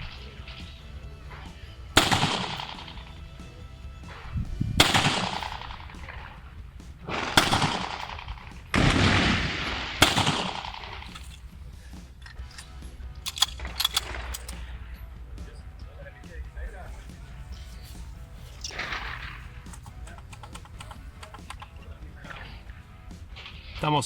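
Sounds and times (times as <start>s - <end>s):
pistol shots echoing: 1.4s - 3.2s, 4.0s - 11.2s, 18.7s - 20.8s.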